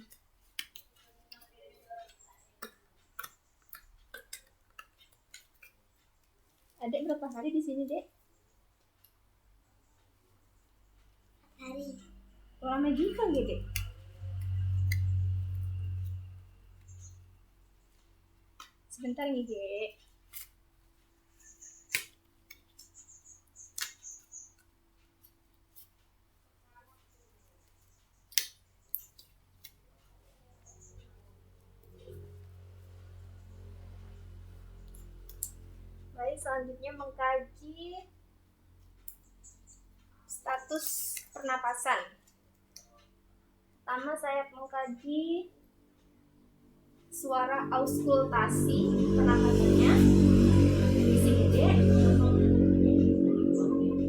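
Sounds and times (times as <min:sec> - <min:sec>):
small ticks: 0:00.0 - 0:12.6, 0:13.2 - 0:31.2, 0:31.8 - 0:35.8, 0:38.8 - 0:43.1.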